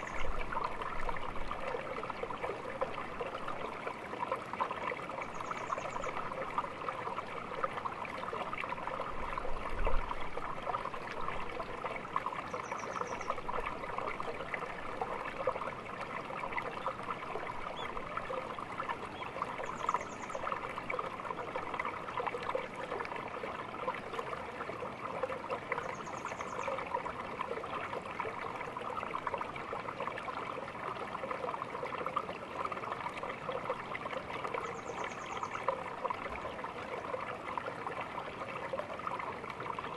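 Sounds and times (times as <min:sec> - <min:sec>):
stream babbling: 0:00.0 - 0:39.9.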